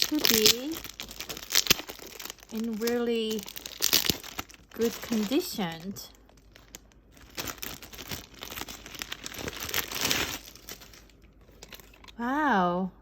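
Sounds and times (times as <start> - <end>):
packaging crinkling and rustling: 0.0 - 12.2.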